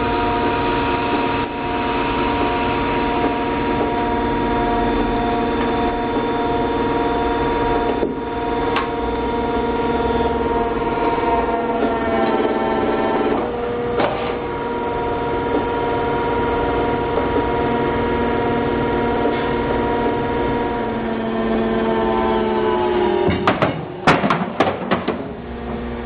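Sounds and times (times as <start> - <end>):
hydraulic pump humming: 0.0 - 26.0
sharp bangs of press: 23.2 - 25.4.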